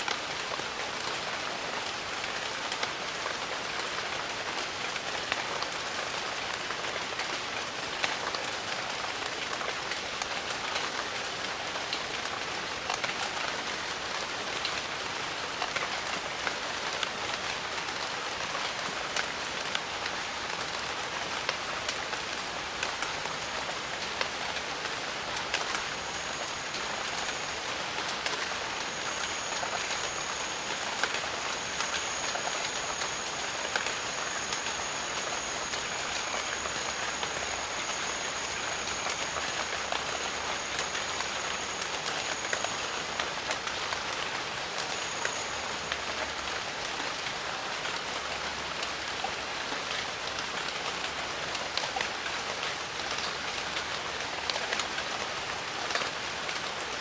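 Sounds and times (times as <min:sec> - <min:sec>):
rain falling: 0:00.0 - 0:57.0
thin high steady tone: 0:13.4 - 0:47.2.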